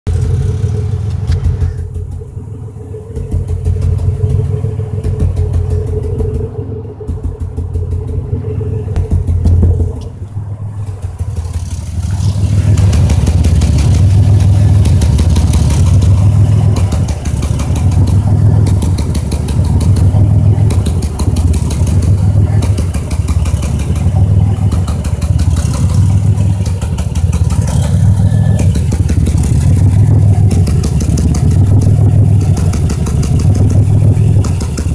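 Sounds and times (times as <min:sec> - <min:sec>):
car engine running with stutter: 0:00.0 - 0:34.9.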